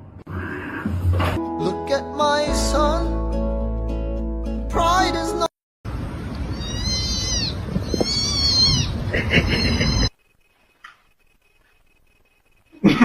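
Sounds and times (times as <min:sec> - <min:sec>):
cat meowing: 0:06.5 - 0:10.1.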